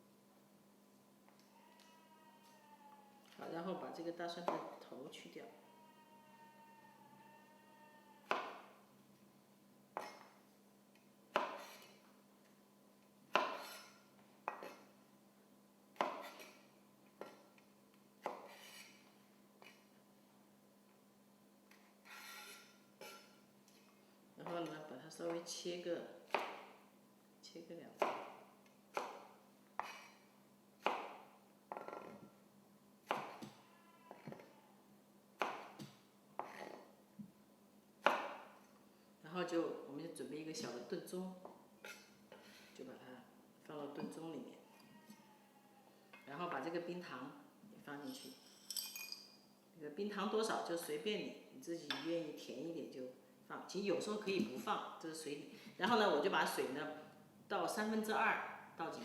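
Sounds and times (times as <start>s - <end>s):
knife chopping on cutting board: 11.3s - 11.9s, 13.3s - 13.9s, 16.0s - 16.6s, 30.8s - 32.0s, 33.1s - 33.6s, 35.4s - 36.7s, 38.0s - 38.4s.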